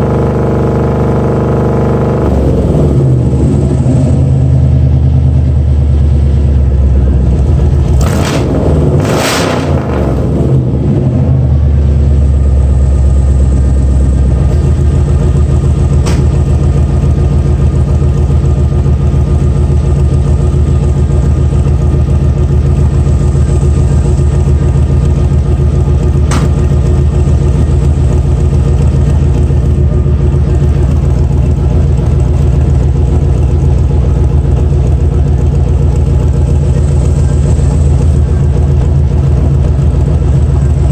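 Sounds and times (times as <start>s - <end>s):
engine idling: 0.0s - 40.9s.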